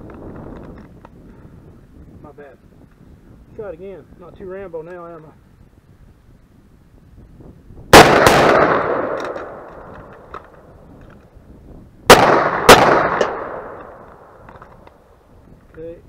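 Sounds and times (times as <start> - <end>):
pistol shots with echo: 7.9 - 10.2, 12.1 - 14.4
rifle shots with echo: 7.9 - 10.6, 12.1 - 14.4.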